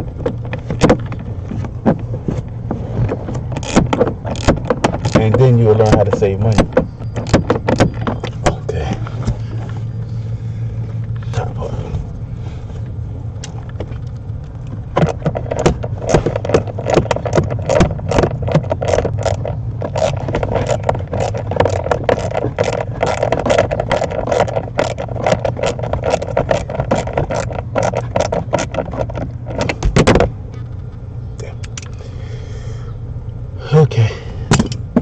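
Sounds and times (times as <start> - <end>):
steady low hum: 0.0 - 35.0
hand ratchet clicking: 3.5 - 8.4, 15.0 - 29.9.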